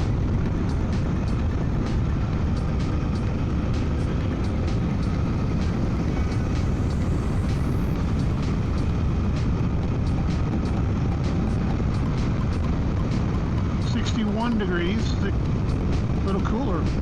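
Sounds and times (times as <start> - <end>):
motorcycle engine drone: 0.0 - 17.0
road noise: 0.0 - 17.0
wind rush: 0.0 - 17.0.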